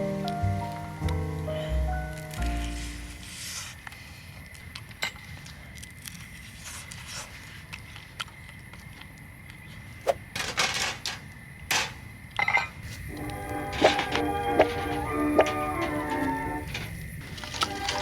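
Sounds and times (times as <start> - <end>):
rustling handling noises: 12.8 - 18.0.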